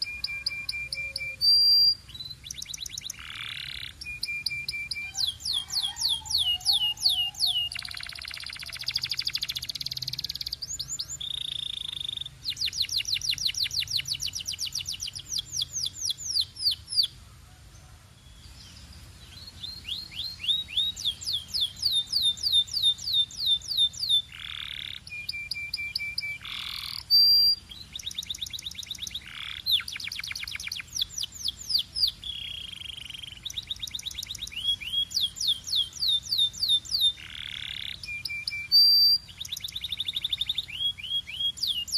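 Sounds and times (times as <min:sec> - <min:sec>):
canary singing: 0:00.0 - 0:17.2, 0:18.3 - 0:41.9.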